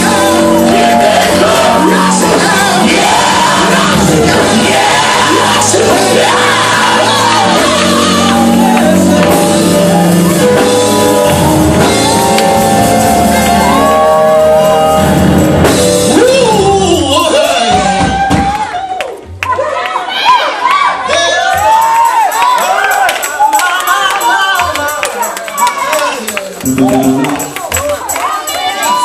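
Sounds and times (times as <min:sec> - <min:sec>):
person shouting and singing: 0:00.0 - 0:10.7, 0:16.0 - 0:18.4
gospel music: 0:00.0 - 0:19.4, 0:21.0 - 0:29.0.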